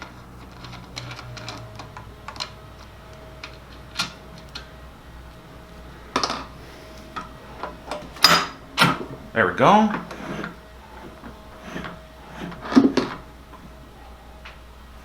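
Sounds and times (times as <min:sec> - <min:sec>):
metal parts clicking and tapping: 0:00.0 - 0:04.7, 0:07.1 - 0:09.2
metal clatter: 0:06.2 - 0:13.8.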